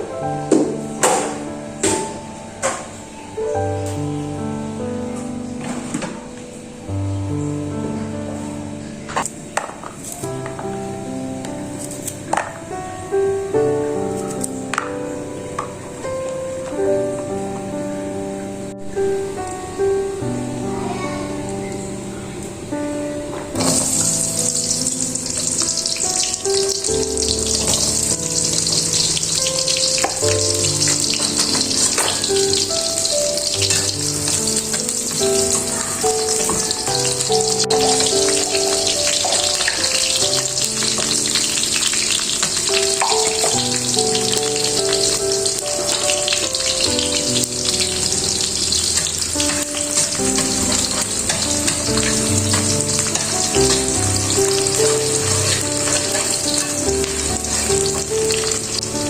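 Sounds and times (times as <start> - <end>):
soft background music: 0.0 - 59.0
food frying sizzle: 23.6 - 59.0.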